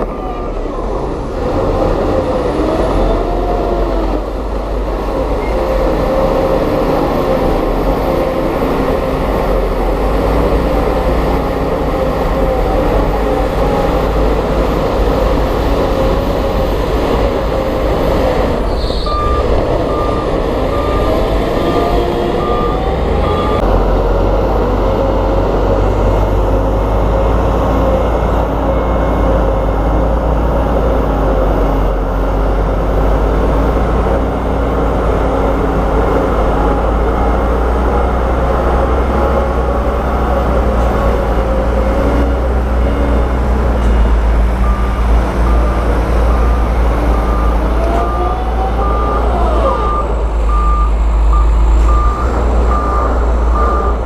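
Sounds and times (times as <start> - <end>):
diesel engines running under load: 0.0 - 54.0
reversing alarm beeping: 17.3 - 23.7, 43.8 - 54.0.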